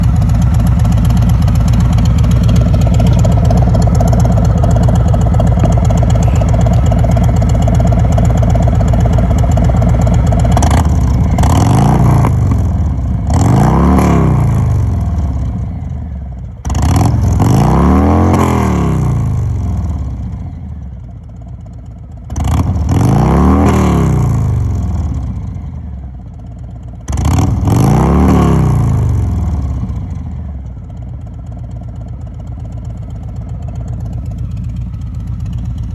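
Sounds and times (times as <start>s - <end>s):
motorcycle engine idling and revving: 0.0s - 35.9s.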